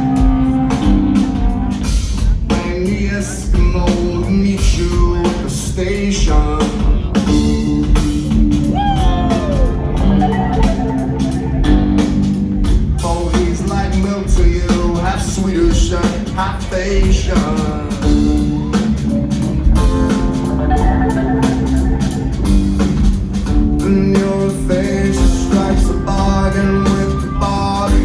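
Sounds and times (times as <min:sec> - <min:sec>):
live rock band playing: 0:00.0 - 0:28.0
swooping guitar note: 0:08.4 - 0:12.6.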